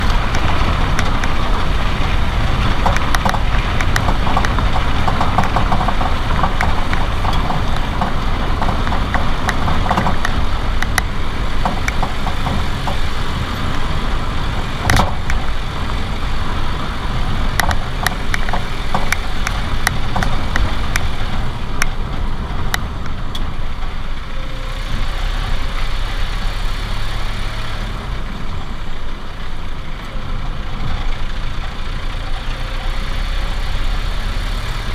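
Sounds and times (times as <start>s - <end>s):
suspension knocking: 0.0s - 25.8s
car engine and road noise: 0.0s - 34.9s.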